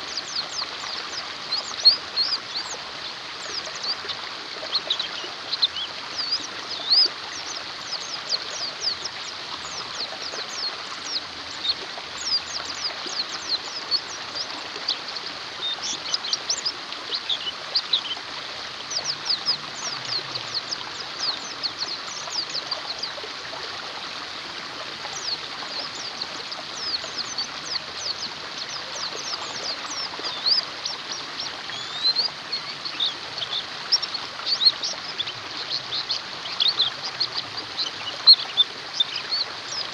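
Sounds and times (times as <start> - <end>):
running water: 0.0 - 39.9
birds chirping rapidly: 25.1 - 39.9.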